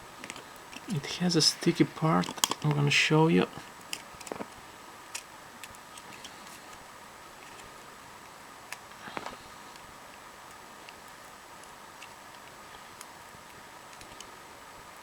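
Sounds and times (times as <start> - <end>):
faint background noise: 0.0 - 15.0
plastic phone parts clicking: 2.2 - 2.7.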